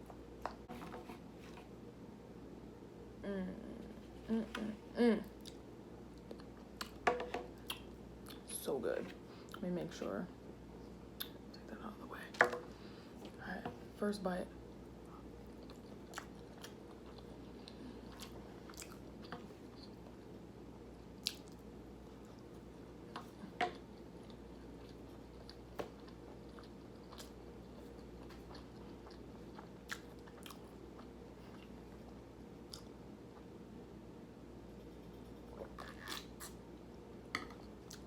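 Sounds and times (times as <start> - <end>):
low background hum: 0.0 - 38.0
person chewing with mouth clicks: 15.6 - 20.0, 24.2 - 27.4.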